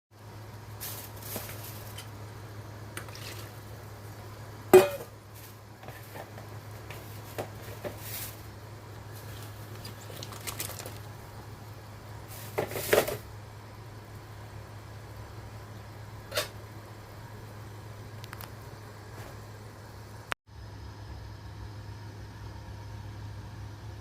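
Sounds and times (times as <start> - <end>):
steady low hum: 0.2 - 24.0
pots and pans clinking: 4.7 - 5.2, 12.4 - 13.2.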